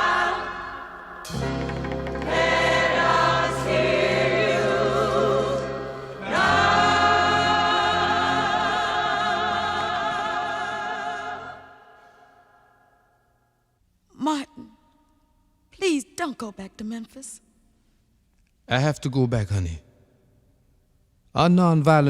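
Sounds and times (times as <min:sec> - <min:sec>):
choir singing gospel: 0:00.0 - 0:13.0.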